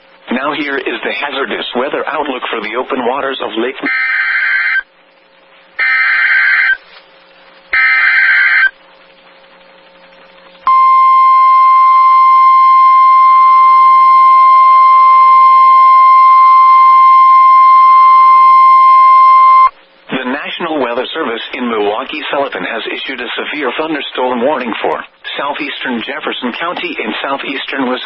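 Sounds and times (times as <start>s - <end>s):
steady warning alarm tone: 3.9s - 4.8s, 5.8s - 6.8s, 7.8s - 8.7s, 10.7s - 19.7s.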